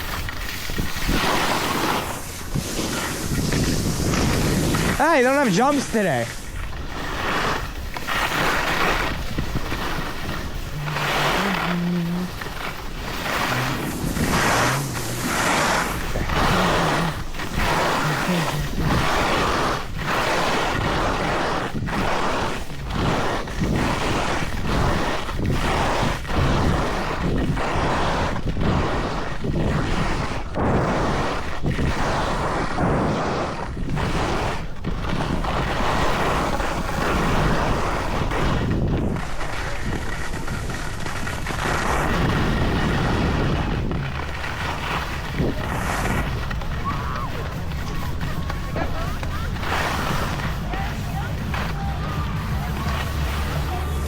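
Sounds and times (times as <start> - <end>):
wind buffeting microphone: 0.0 - 53.6
skis sliding on snow: 0.0 - 54.0
skis swishing in turns: 0.0 - 54.0.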